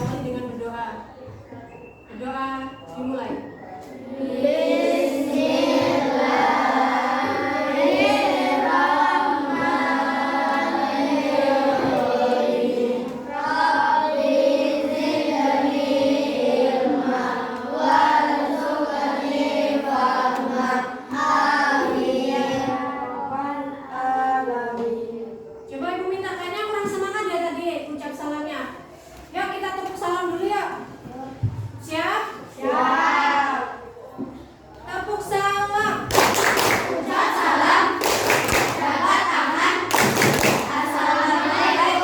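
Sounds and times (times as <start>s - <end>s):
children chanting a prayer: 3.7s - 26.1s, 32.4s - 34.6s, 36.0s - 42.0s.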